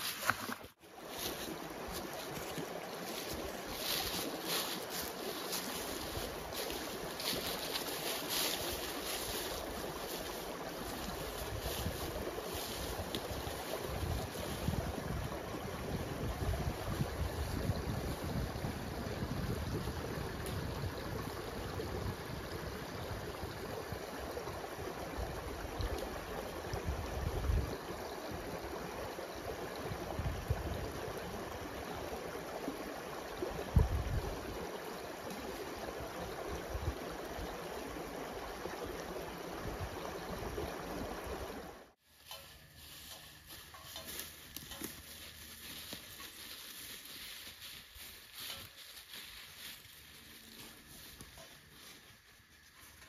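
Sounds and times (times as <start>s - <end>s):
running water rushing: 0.0s - 42.0s
wind buffeting microphone: 8.3s - 27.9s, 33.6s - 34.6s
light clicks and patter: 42.3s - 49.8s.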